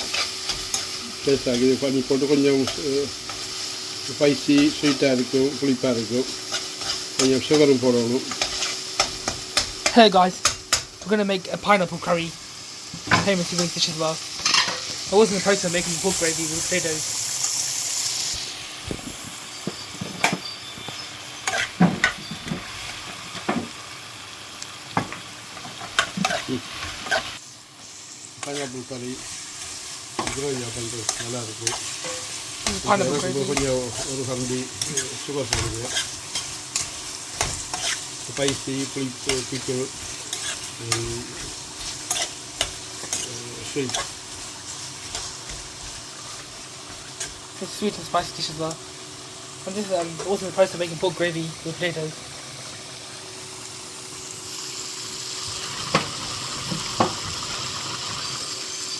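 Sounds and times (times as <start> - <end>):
gravy sizzling in a pot: 0.0 - 58.9
utensil scraping and knocking pot: 30.2 - 47.4.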